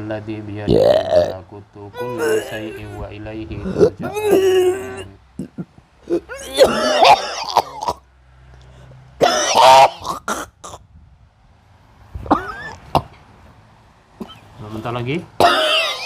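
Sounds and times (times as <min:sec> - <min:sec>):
person coughing and hawking: 0:02.0 - 0:08.0, 0:09.2 - 0:10.8, 0:12.2 - 0:13.1, 0:14.2 - 0:14.5, 0:15.4 - 0:16.0.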